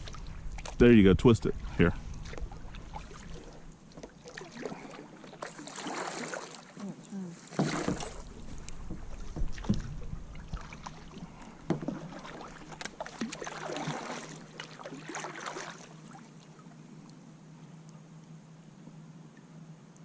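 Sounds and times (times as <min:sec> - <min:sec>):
water splashing: 0:00.0 - 0:16.8
knocks and clicks against hull: 0:03.9 - 0:04.2, 0:07.5 - 0:11.0, 0:11.6 - 0:13.3.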